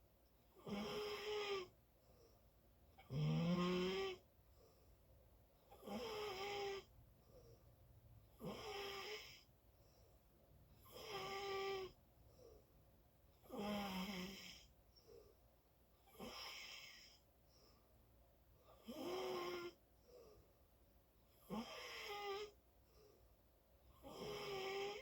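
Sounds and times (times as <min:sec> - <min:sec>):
loud snoring: 0:00.6 - 0:01.7, 0:03.0 - 0:04.2, 0:05.8 - 0:06.9, 0:08.4 - 0:09.4, 0:10.9 - 0:12.0, 0:13.5 - 0:14.6, 0:18.8 - 0:19.8, 0:21.4 - 0:22.5, 0:24.0 - 0:25.0.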